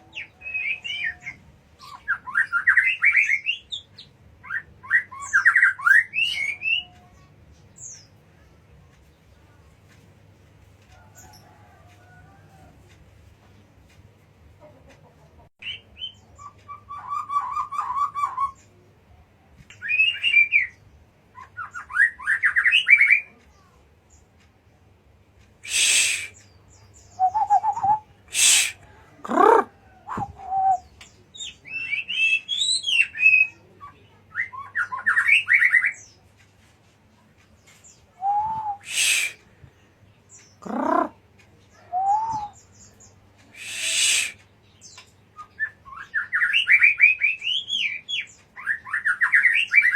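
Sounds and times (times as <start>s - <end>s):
songbird singing whistled notes: 0.0s - 8.1s, 19.7s - 23.3s, 25.6s - 28.9s, 30.0s - 36.1s, 37.9s - 39.5s, 41.7s - 49.9s
harsh rasping bird notes: 25.6s - 26.4s, 27.3s - 30.5s, 38.2s - 39.6s, 40.6s - 41.2s, 43.5s - 44.5s.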